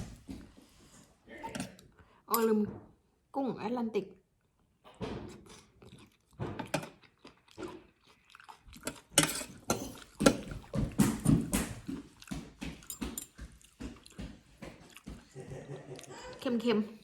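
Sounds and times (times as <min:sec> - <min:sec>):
person biting and chewing food: 0:05.3 - 0:12.4.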